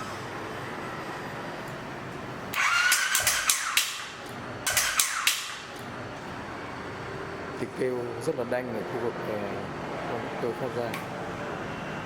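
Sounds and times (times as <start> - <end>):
engine cranking on electric starter: 2.5 - 5.9
harsh rapid engine clatter: 2.5 - 6.3.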